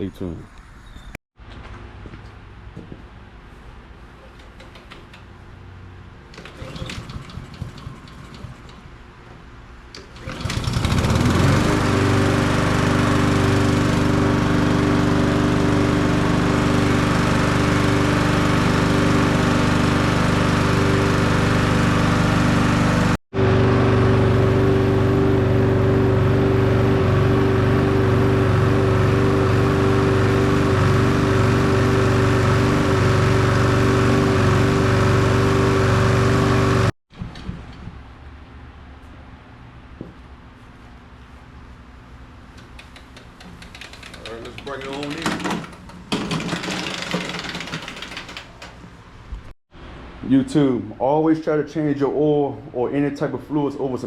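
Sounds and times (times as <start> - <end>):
lawn mower engine running: 6.1 - 8.9, 9.9 - 36.9, 42.5 - 49.4.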